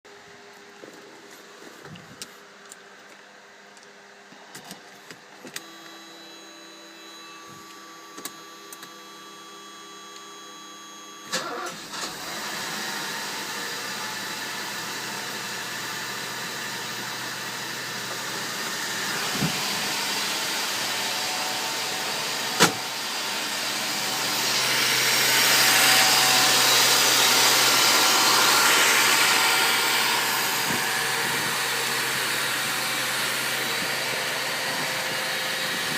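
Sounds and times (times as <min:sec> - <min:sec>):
faint whine: 0:03.8 - 0:11.6
car engine starting and running: 0:11.2 - 0:35.9.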